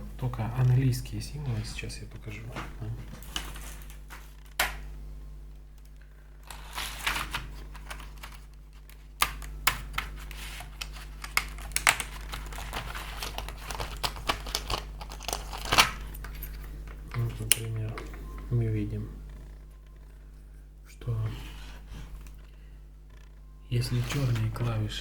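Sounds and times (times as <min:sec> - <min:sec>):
packaging rustling and crinkling: 0:03.0 - 0:04.7, 0:06.4 - 0:18.1, 0:23.8 - 0:24.8.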